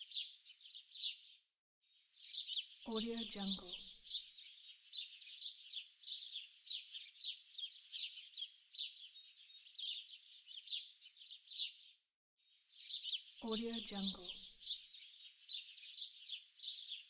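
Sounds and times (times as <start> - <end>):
birds chirping: 12.7 - 17.0.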